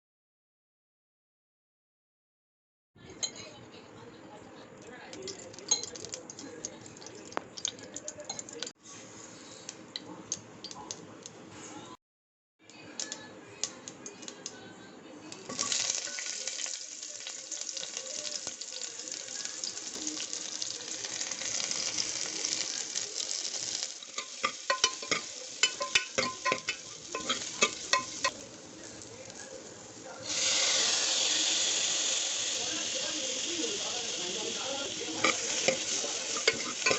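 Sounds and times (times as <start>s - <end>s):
food sizzling in hot oil: 15.4s - 36.9s
spoon tapping against pan: 24.0s - 28.4s.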